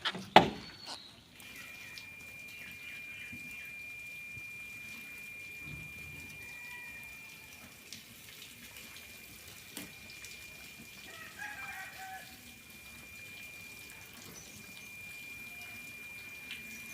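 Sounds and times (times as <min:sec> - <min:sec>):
water running and splashing: 0:00.0 - 0:16.9
high-pitched tone: 0:01.4 - 0:07.7, 0:10.1 - 0:16.9
chicken calling: 0:11.0 - 0:12.5.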